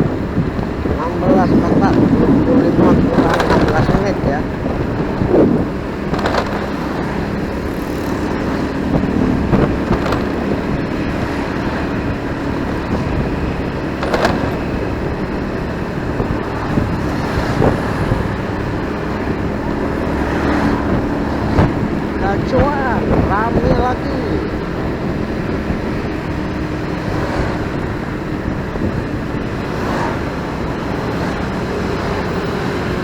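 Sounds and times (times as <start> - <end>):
motorcycle engine running: 0.0 - 33.0
surrounding traffic noise: 0.0 - 33.0
short sharp knocks: 14.0 - 14.9.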